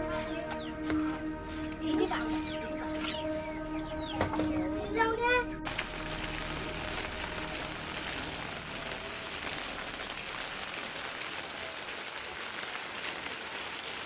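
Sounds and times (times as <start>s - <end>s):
rain drops ticking: 5.6s - 14.0s.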